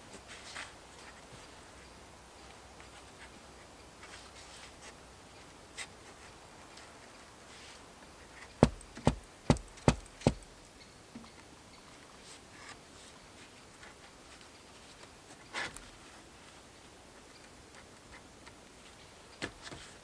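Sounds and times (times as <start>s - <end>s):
sharp knocks: 8.6s - 10.5s.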